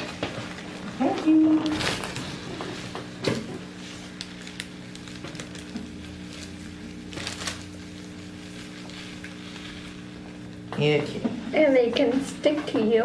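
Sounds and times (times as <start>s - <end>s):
steady low hum: 0.0s - 13.0s
slime crinkling and clicking: 4.1s - 10.9s.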